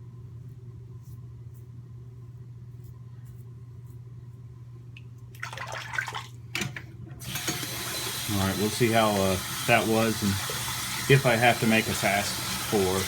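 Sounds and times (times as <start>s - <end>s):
tap water running into sink: 5.4s - 13.0s.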